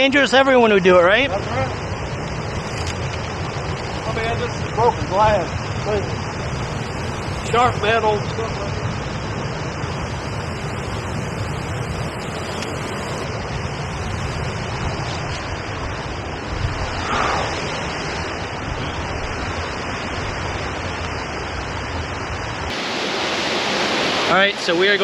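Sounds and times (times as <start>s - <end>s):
wind rumble on microphone: 1.3s - 22.7s
waterfall rushing: 1.9s - 16.3s, 22.7s - 25.0s.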